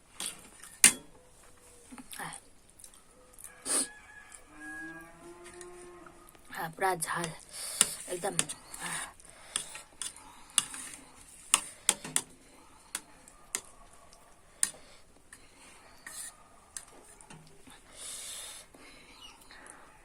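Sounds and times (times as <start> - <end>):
cutlery clinking on a dish: 0.8 - 1.1.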